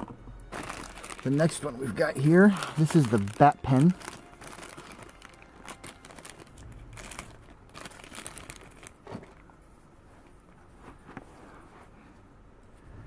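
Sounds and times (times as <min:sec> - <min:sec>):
plastic packaging crinkling: 0:00.5 - 0:09.5.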